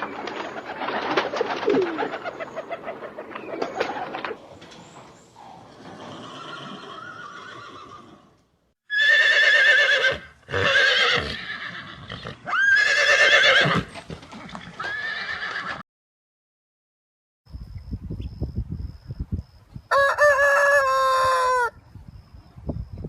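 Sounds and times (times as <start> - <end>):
horse whinnying: 5.7 - 15.8.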